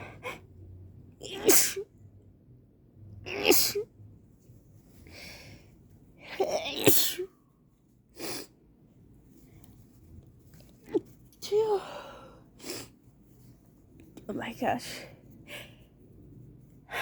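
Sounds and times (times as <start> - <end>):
woman sneezing: 1.2 - 1.9, 3.3 - 3.9, 6.4 - 7.3.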